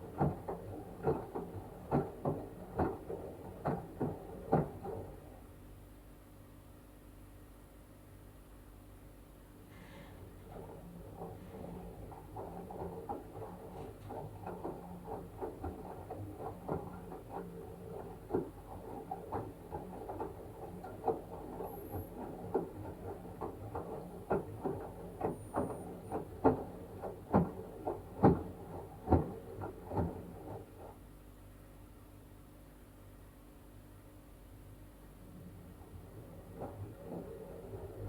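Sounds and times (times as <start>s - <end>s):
washing machine clicks and knocks: 0.0s - 5.3s, 10.2s - 31.0s, 35.3s - 38.0s
washing machine hum: 0.0s - 38.0s.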